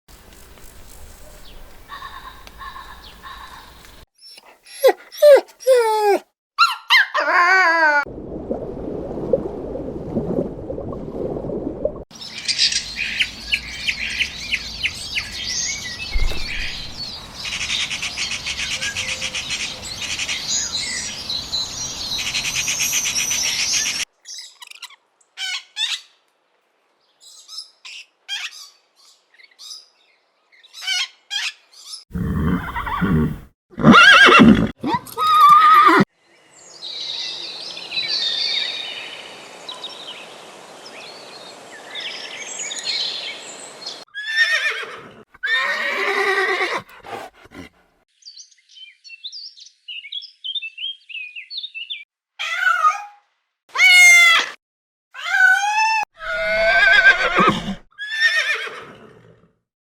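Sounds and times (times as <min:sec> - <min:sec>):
low rough animal call: 0:32.1 - 0:35.0.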